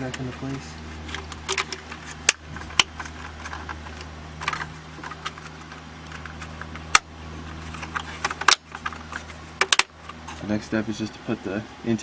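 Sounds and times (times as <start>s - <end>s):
plastic parts clicking and rattling: 0.0s - 10.4s
steady low hum: 0.0s - 12.0s
plastic parts snapping: 1.1s - 7.1s, 7.7s - 10.0s.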